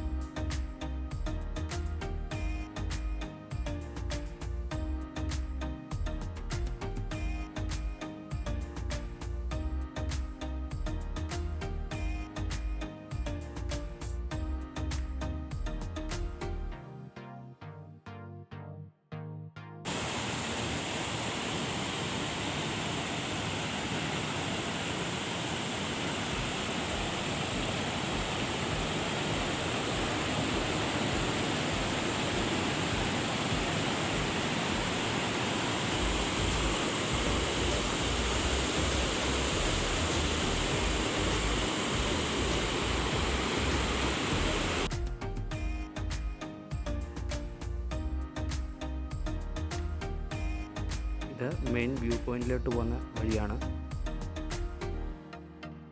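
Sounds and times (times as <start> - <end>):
waterfall rushing: 19.9 - 44.9.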